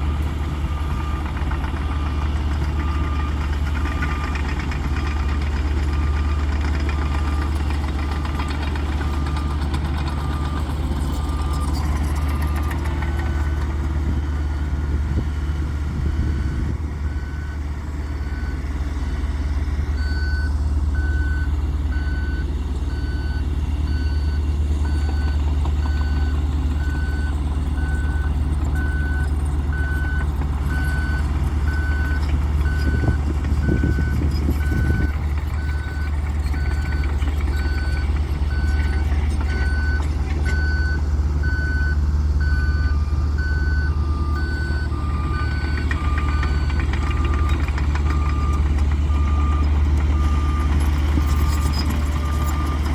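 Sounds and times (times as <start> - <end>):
construction vehicle engine rumble: 0.0 - 52.9
low-pitched backup alarm beeping: 38.5 - 50.7.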